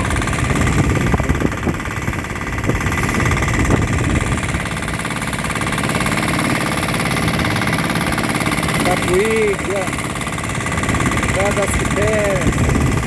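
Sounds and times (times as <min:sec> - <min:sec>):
boat engine humming: 0:00.0 - 0:13.0.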